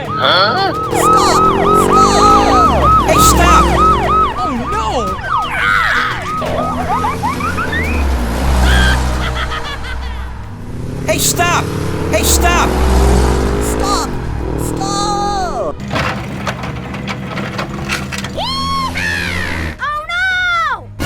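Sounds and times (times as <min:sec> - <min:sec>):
siren wailing: 0:00.0 - 0:09.3
whistle-like glides: 0:00.0 - 0:09.3
low engine rumble: 0:00.0 - 0:19.8.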